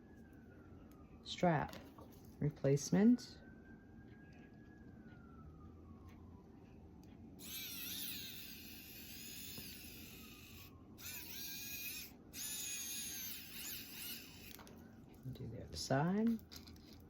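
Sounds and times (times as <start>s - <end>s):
electric screwdriver whining: 7.4s - 14.7s.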